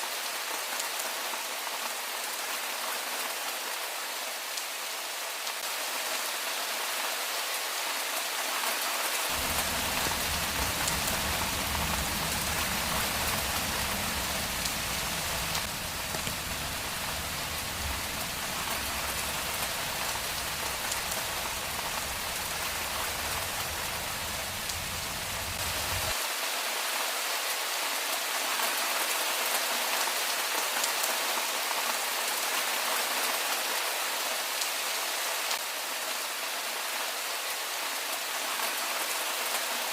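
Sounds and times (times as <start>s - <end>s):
rain falling on street: 0.0s - 39.9s
low rumble: 9.4s - 26.1s.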